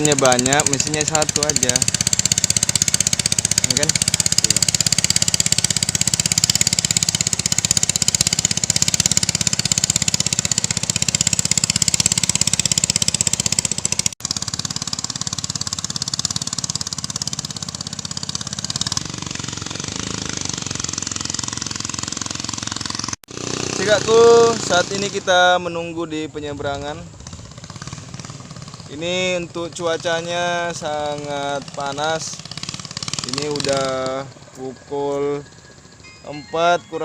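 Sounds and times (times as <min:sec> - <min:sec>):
motorboat engine knocking: 0:00.0 - 0:23.2, 0:27.1 - 0:28.9, 0:32.4 - 0:34.5.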